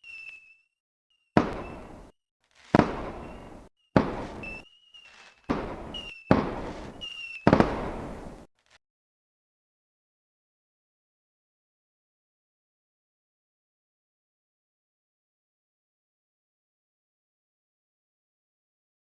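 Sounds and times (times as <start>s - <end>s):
shrill firework whistles: 0.0s - 8.4s
fireworks bangs: 1.4s - 8.8s.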